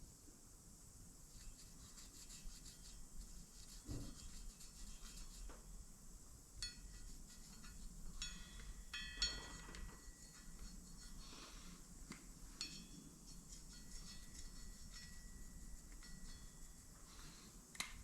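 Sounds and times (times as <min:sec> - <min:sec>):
scribe scratching metal: 0:01.3 - 0:05.5, 0:06.6 - 0:09.1, 0:09.7 - 0:11.8, 0:12.6 - 0:17.1
metallic rings and clinks: 0:06.6 - 0:11.4, 0:12.6 - 0:16.8.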